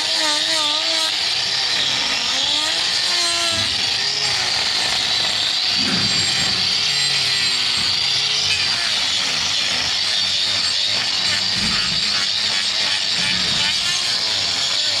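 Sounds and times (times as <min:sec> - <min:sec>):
power tool cutting: 0:00.0 - 0:15.0.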